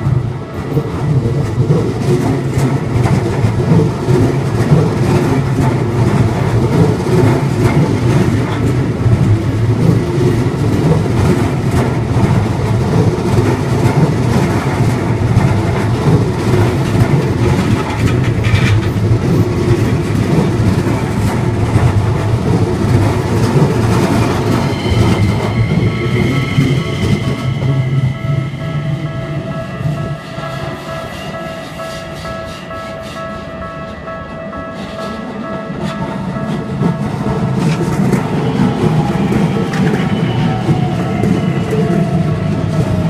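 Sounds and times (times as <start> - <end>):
rhythmic rail clacks: 0.0 - 43.0
train wheels rumbling on rails: 0.0 - 43.0
steady high tones: 22.9 - 43.0.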